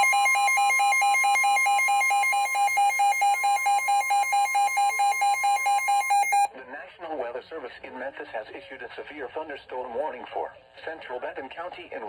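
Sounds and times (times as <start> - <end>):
rapid warbling alarm beeps: 0.0 - 6.5
steady warning tone: 0.0 - 6.5.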